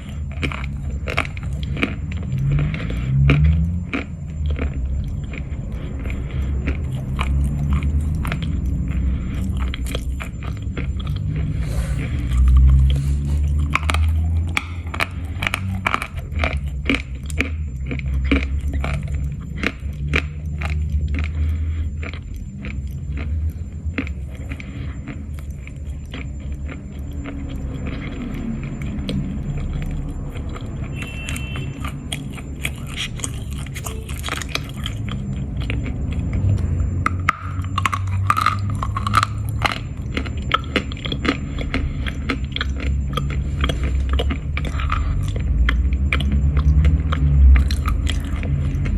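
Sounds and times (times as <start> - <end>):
chalk crunching being chewed: 0.0 - 48.9
low rumble: 0.0 - 48.9.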